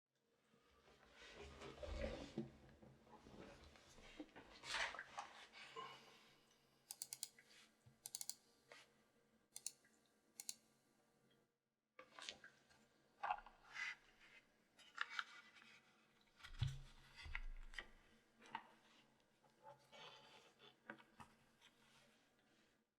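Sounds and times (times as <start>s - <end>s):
mechanical keyboard keystrokes: 6.9s - 7.3s, 8.1s - 8.4s.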